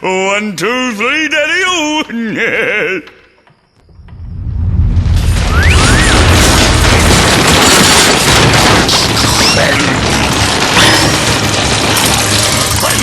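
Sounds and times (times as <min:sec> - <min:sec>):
heavy low rumble: 0:03.9 - 0:08.8
cartoon crashing and booming: 0:04.1 - 0:13.0
sliding whistles and squeals: 0:05.2 - 0:06.7.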